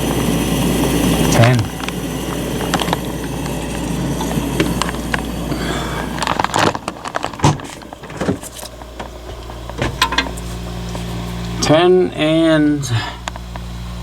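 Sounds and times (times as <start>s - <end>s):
low machine hum: 0.0s - 14.0s.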